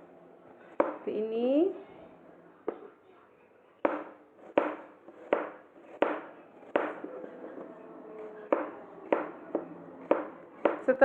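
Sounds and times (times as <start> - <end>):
knife tapping on cutting board: 0.8 - 1.0, 3.8 - 7.0, 8.5 - 10.8.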